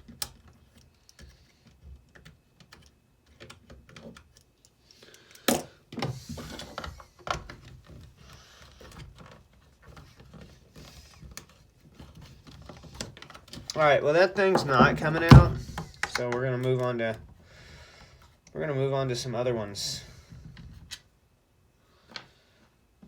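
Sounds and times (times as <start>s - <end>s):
hands handling drill parts: 0.0s - 17.2s.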